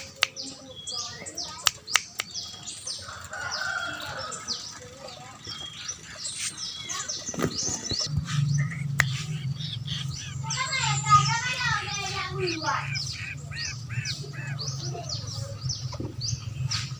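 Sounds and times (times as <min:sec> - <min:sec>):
young birds of prey begging calls: 0:00.0 - 0:16.9
low hum: 0:06.9 - 0:16.9.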